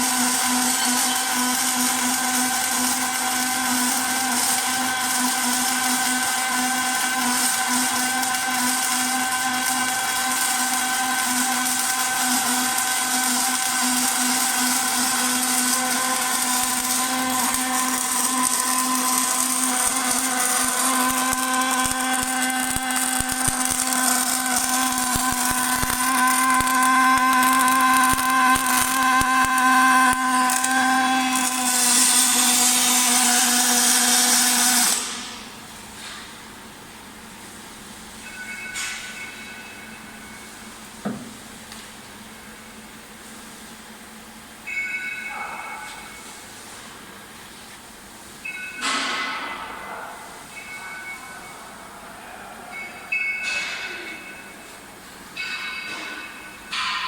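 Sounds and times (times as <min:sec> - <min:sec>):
welding machine humming: 0:00.0 - 0:44.7.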